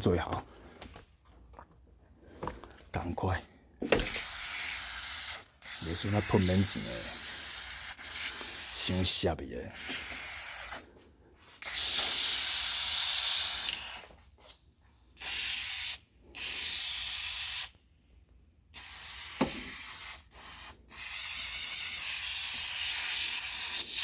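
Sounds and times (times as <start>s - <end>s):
aerosol can spraying: 3.9s - 10.8s, 11.6s - 14.1s, 15.2s - 17.7s, 18.8s - 24.0s.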